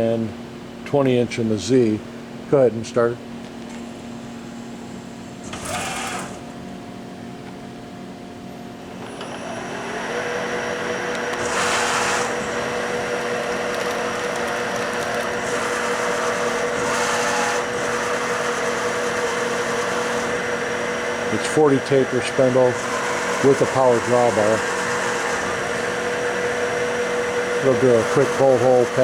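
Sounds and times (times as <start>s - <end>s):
milling machine spindle whine: 4.0s - 6.6s, 8.6s - 29.0s.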